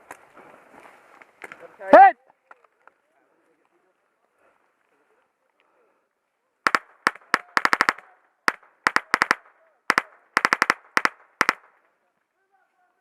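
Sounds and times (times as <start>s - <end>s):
airsoft guns firing: 6.6s - 11.8s.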